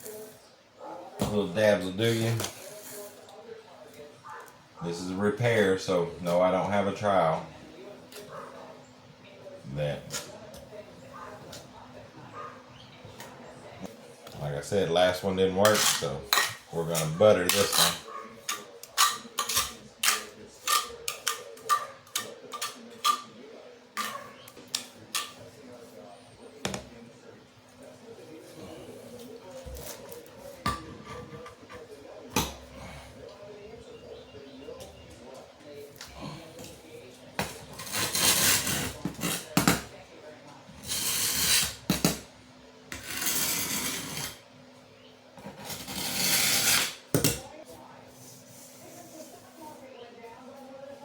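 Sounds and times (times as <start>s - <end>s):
metal tool scraping mortar on tile: 2.4s - 3.2s, 15.1s - 23.3s, 37.4s - 39.8s, 40.8s - 42.2s, 42.9s - 44.4s, 45.4s - 47.0s.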